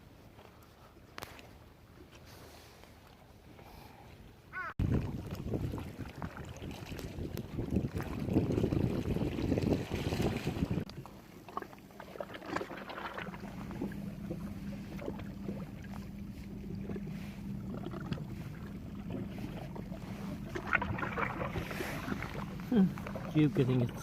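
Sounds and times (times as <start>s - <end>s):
wind buffeting microphone: 4.8s - 11.0s
low motor hum: 4.8s - 24.0s.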